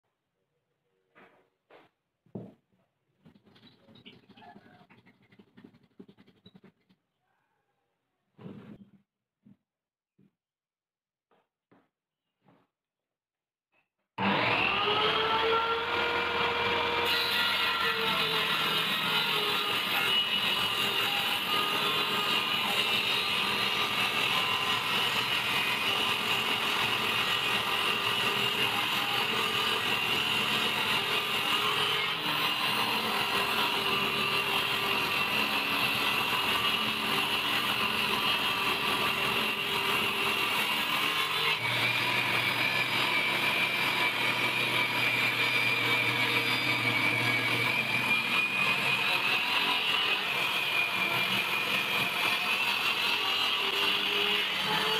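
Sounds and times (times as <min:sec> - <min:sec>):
power tool whining on wood: 0:14.2 - 0:54.9.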